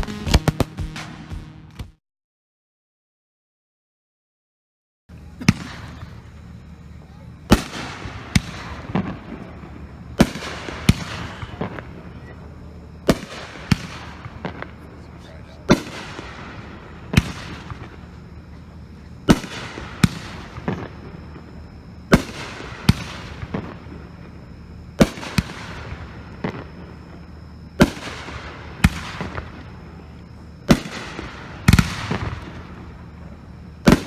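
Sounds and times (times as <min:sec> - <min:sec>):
firework bangs: 0:00.0 - 0:01.8, 0:07.5 - 0:24.4, 0:25.0 - 0:30.1, 0:30.7 - 0:34.0.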